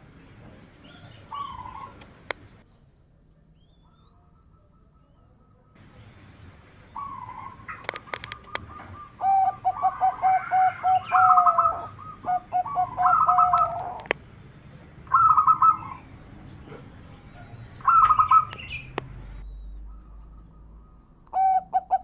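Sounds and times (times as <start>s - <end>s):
dove cooing: 0.8s - 2.3s, 6.8s - 14.2s, 15.0s - 22.0s
sharp clicks: 7.8s - 8.7s, 18.0s - 19.2s.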